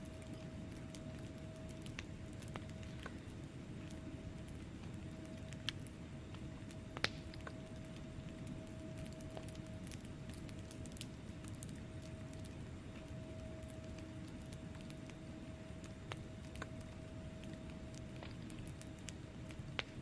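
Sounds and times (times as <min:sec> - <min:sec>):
low rumble of flames: 0:00.0 - 0:20.0
wood fire crackling: 0:00.0 - 0:20.0
fire pops: 0:00.1 - 0:15.2.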